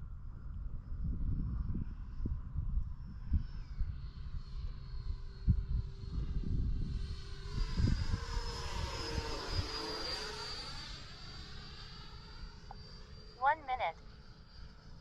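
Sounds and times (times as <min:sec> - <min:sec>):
wind buffeting microphone: 0:00.0 - 0:04.8, 0:05.4 - 0:09.8
electric ducted fan jet whine: 0:00.0 - 0:15.0.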